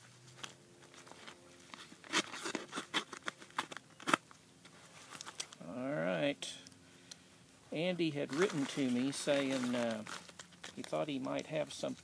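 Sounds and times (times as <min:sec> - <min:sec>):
packaging crinkling and tearing: 0:00.4 - 0:04.4, 0:08.3 - 0:12.0.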